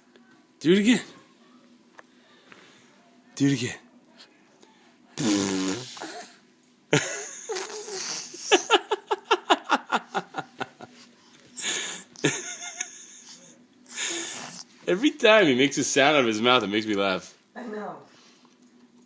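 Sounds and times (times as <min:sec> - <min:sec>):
adult laughing: 0:06.9 - 0:07.8, 0:08.4 - 0:10.9, 0:12.2 - 0:13.5.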